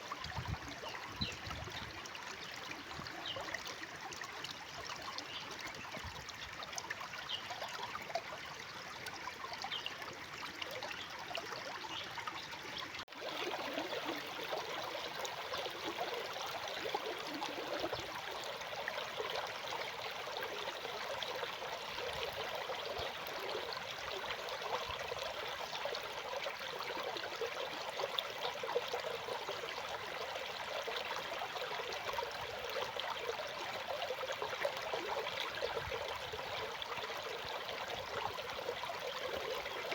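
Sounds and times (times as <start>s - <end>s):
stream water trickling: 0.0s - 39.9s.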